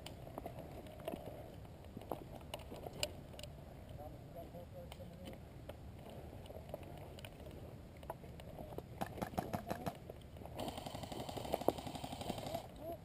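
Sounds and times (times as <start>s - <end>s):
airsoft rifle full-auto fire: 10.6s - 12.7s.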